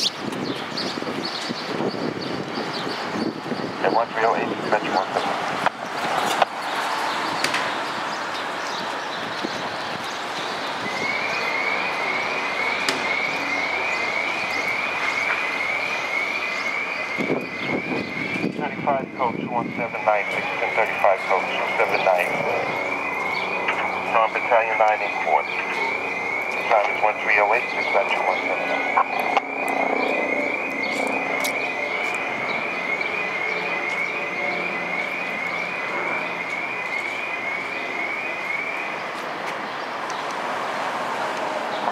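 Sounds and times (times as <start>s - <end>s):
city traffic noise: 0.0s - 41.9s
electronic siren yelp: 3.0s - 5.7s, 7.0s - 40.0s.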